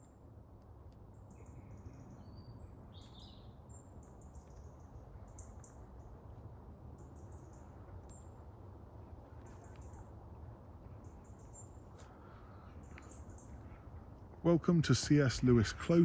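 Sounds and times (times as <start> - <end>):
songbirds chirping: 0.0 - 16.0.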